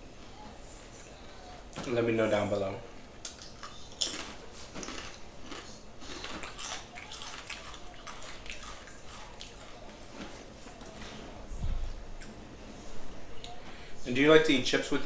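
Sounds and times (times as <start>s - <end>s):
man chewing crunchy food: 3.2s - 10.5s.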